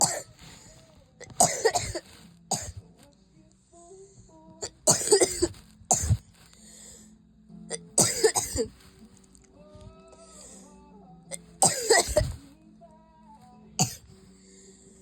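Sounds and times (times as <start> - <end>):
person coughing: 0.0 - 0.3, 1.2 - 2.8, 4.6 - 6.2, 7.7 - 8.7, 11.6 - 12.4, 13.8 - 14.0.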